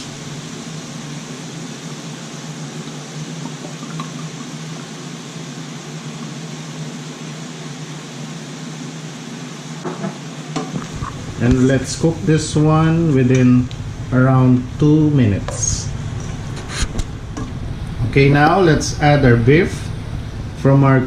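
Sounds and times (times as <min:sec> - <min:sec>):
vegetables sizzling in a pan: 0:00.0 - 0:07.8
low hum: 0:10.8 - 0:21.0.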